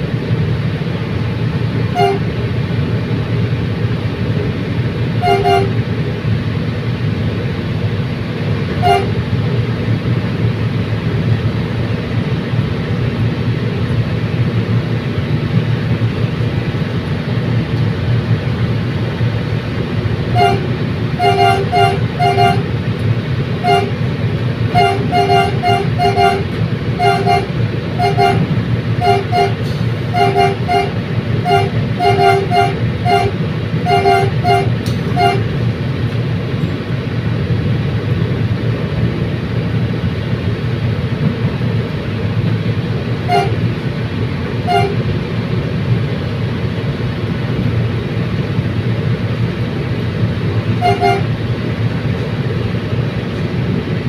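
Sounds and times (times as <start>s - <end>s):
train running with low rumble: 0.0s - 54.0s
train horn toots: 1.9s - 2.4s, 5.2s - 5.9s, 8.8s - 9.3s, 20.3s - 22.7s, 23.6s - 24.0s, 24.7s - 35.6s, 43.2s - 43.8s, 44.6s - 45.1s, 50.7s - 51.4s.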